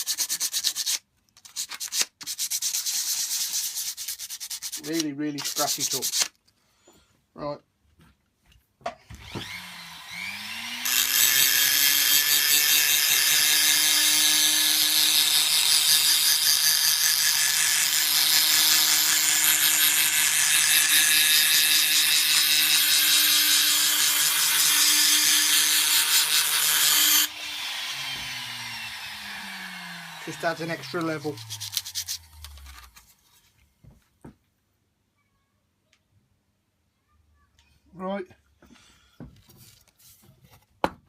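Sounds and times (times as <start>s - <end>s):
electric sander motor: 9.2s - 32.7s
abrasive grinding on workpiece: 9.4s - 32.4s.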